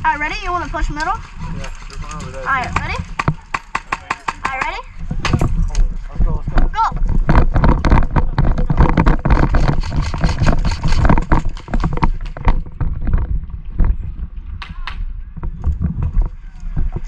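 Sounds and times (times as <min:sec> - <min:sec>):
gear knocking: 0:00.0 - 0:05.8, 0:06.5 - 0:14.1
clattering footsteps: 0:00.0 - 0:17.0
low rumble on microphone: 0:04.9 - 0:17.0.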